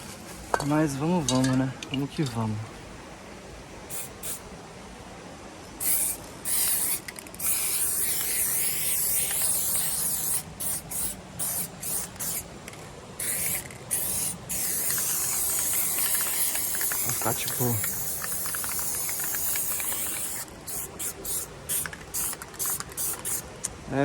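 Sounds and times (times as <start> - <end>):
aerosol spray can hissing: 3.9 - 4.4, 5.8 - 12.4, 13.2 - 23.5.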